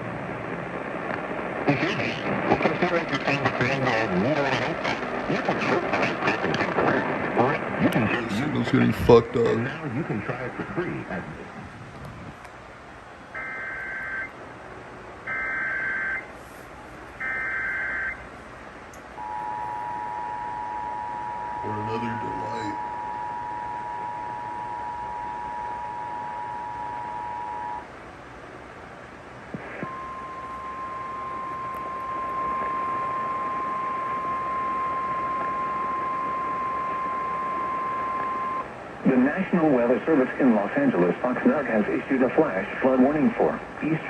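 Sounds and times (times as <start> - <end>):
radio static hiss: 0.0 - 12.7, 13.3 - 44.0
two-tone attention signal: 19.2 - 27.8
long steady high beep: 19.2 - 27.9, 29.8 - 38.7.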